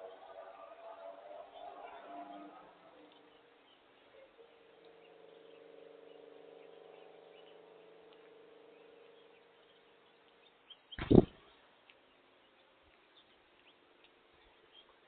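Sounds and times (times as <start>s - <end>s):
loud thump: 11.0s - 11.4s.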